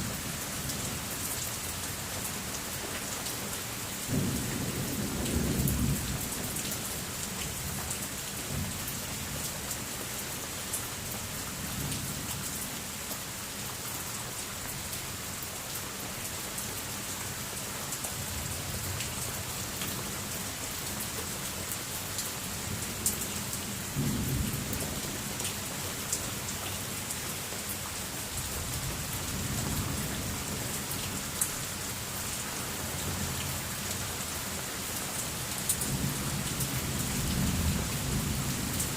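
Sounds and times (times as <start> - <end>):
heavy rain falling: 0.0 - 38.9.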